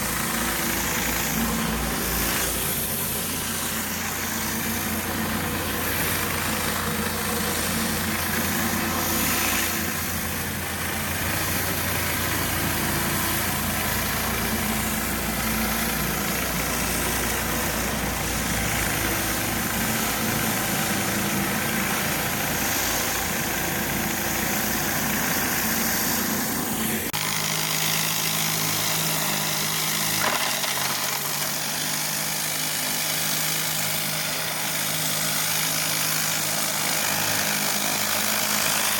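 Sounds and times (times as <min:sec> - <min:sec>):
water spraying hiss: 0:00.0 - 0:27.1
pressure washer engine running: 0:00.0 - 0:38.9.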